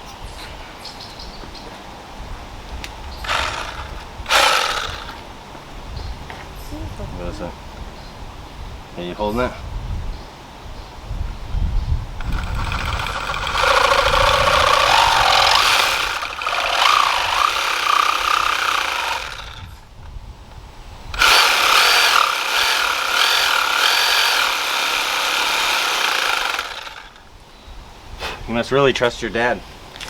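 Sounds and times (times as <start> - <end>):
handheld power tool running: 3.2 - 5.2, 12.2 - 19.8, 21.1 - 27.2.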